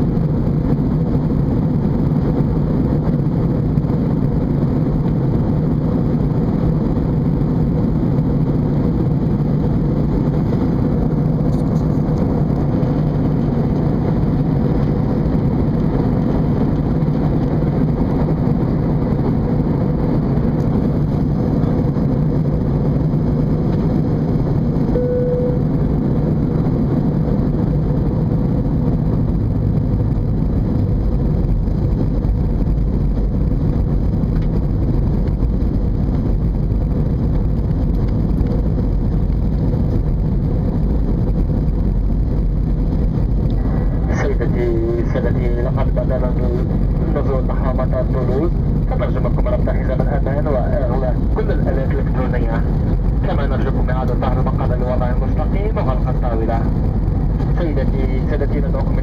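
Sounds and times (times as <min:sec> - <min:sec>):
airplane cabin engine drone: 0:00.0 - 0:59.0
faint tone: 0:24.9 - 0:25.9.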